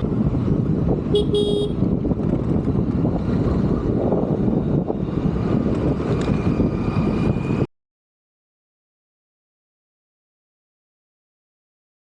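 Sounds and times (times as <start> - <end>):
road traffic rumble: 0.0 - 7.7.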